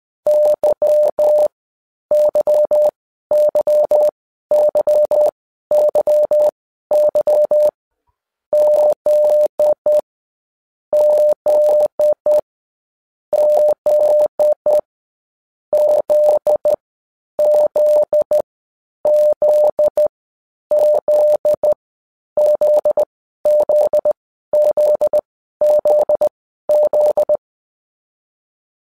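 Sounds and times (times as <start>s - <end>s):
morse code beeps: 0.3s - 1.5s, 2.1s - 7.8s, 8.6s - 10.0s, 11.0s - 12.4s, 13.3s - 14.9s, 15.8s - 16.8s, 17.4s - 18.4s, 19.1s - 20.1s, 20.7s - 21.8s, 22.4s - 27.4s.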